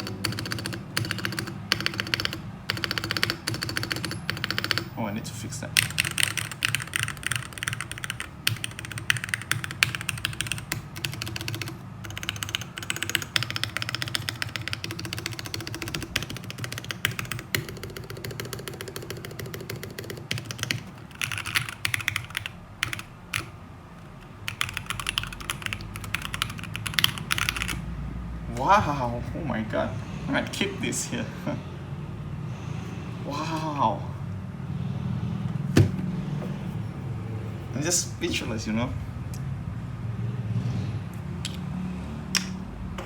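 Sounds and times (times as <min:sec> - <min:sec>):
mechanical keyboard typing: 0:00.0 - 0:05.0, 0:05.7 - 0:27.8.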